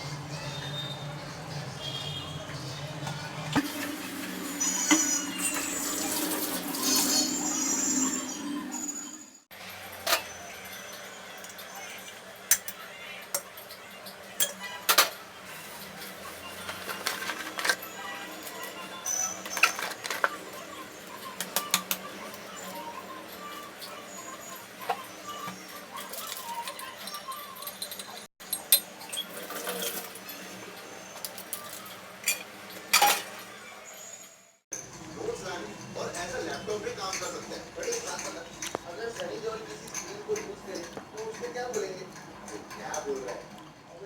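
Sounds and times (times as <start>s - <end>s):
metal kitchen utensils clinking: 3.0s - 9.0s, 9.6s - 22.4s, 24.9s - 33.5s, 34.8s - 43.5s.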